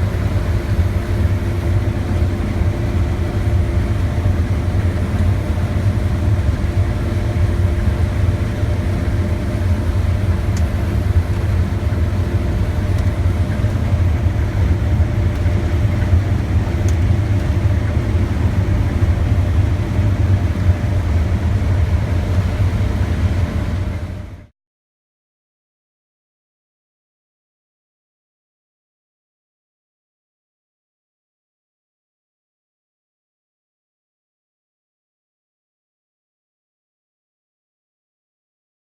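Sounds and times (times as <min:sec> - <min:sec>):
combine harvester droning: 0:00.0 - 0:24.5.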